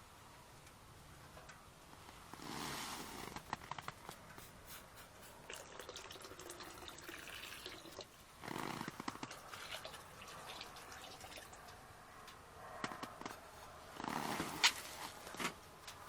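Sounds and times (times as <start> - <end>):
water being poured: 5.2 - 11.6
water dripping: 5.2 - 11.8.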